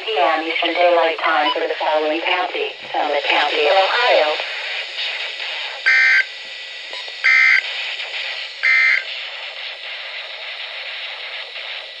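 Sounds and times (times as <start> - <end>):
steady radio hiss: 0.0 - 12.0
harsh digital data bursts: 5.9 - 6.3, 7.2 - 7.7, 8.6 - 9.1.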